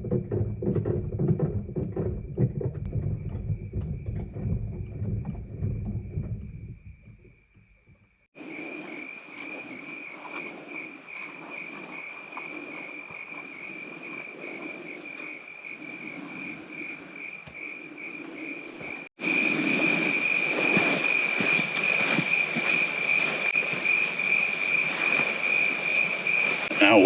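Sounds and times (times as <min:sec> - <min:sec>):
insects trilling: 0:06.5 - 0:27.0.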